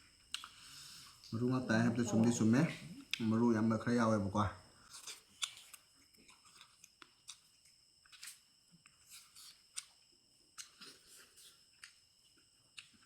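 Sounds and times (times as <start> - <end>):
person chewing: 0.3 - 0.6, 4.9 - 7.5, 8.1 - 8.4, 10.6 - 13.0.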